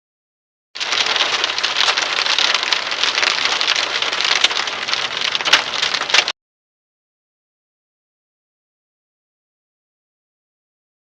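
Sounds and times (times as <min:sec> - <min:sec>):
hail pelting metal: 0:00.8 - 0:06.3.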